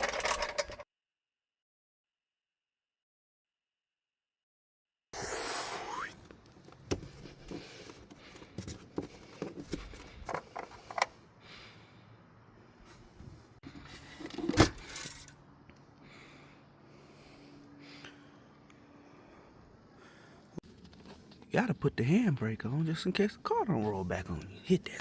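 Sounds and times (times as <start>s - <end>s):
metal tools clinking and knocking: 0.0s - 0.8s.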